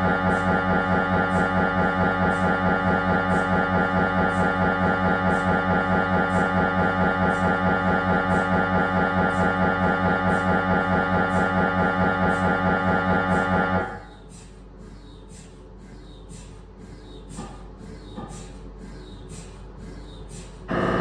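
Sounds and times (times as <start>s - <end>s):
mri scanner loud buzzing: 0.0s - 14.2s, 20.7s - 21.0s.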